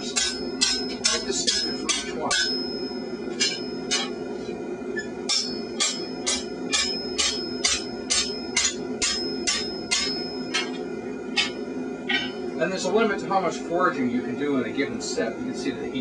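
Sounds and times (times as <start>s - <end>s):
hammer striking steel on anvil: 0.0s - 4.2s, 5.3s - 12.4s.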